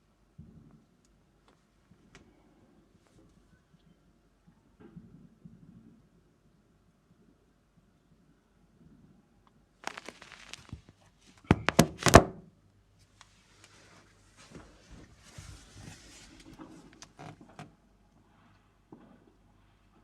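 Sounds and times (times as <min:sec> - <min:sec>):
rustling: 0:09.8 - 0:12.4, 0:13.2 - 0:17.6.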